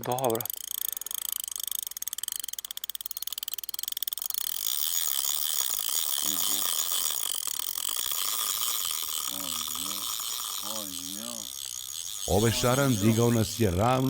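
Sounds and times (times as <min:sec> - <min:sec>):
frogs calling: 0:05.5 - 0:14.0
person speaking: 0:09.2 - 0:11.6, 0:12.2 - 0:14.0.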